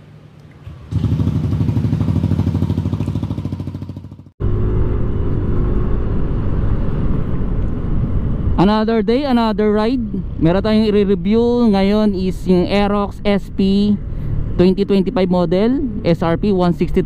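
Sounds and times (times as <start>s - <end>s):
scooter engine running: 0.6s - 5.0s.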